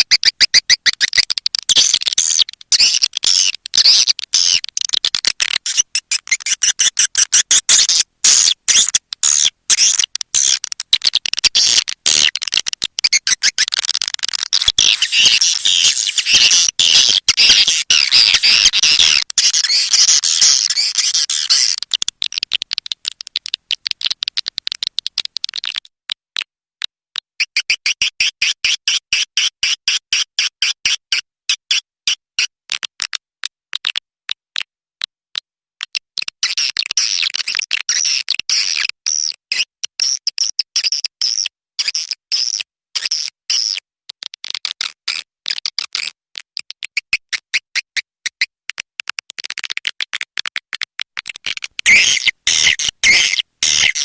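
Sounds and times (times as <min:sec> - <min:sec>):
swiftlet chirps and clicks: 0:00.0 - 0:25.9.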